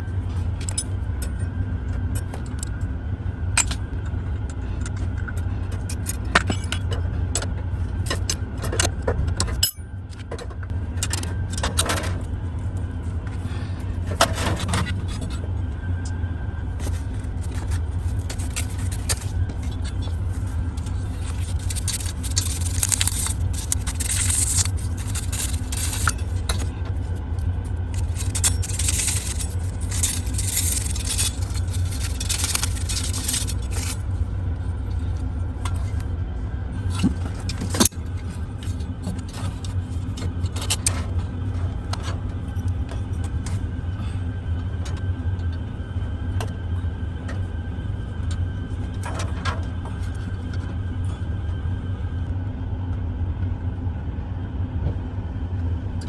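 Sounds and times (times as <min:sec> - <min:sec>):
steady low hum: 0:00.0 - 0:56.0
metal clinking and scraping: 0:16.8 - 0:27.1, 0:27.7 - 0:34.0.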